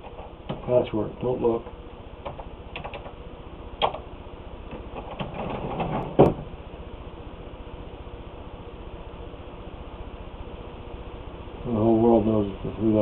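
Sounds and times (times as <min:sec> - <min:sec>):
steady low hum: 0:00.0 - 0:13.0
knock: 0:05.8 - 0:06.4.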